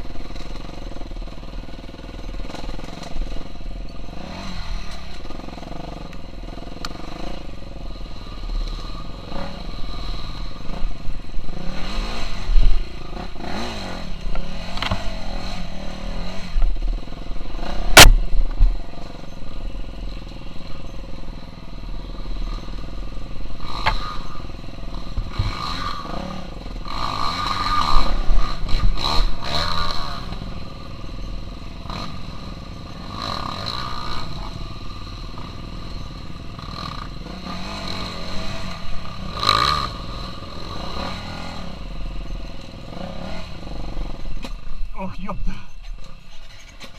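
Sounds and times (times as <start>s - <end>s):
dirt bike engine revving: 0.0s - 46.9s
sharp crack: 17.9s - 18.6s.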